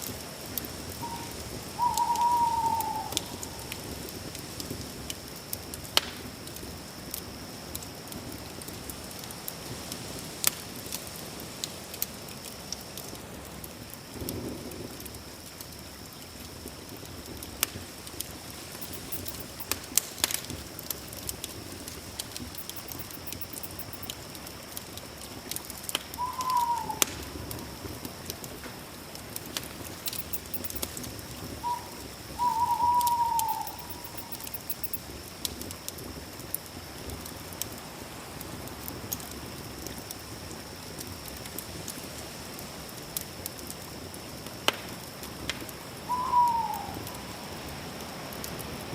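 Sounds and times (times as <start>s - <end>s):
night insects droning: 0.0s - 48.9s
campfire crackling and popping: 3.2s - 9.6s, 10.4s - 22.6s, 23.2s - 26.2s, 27.0s - 31.6s, 43.1s - 45.8s.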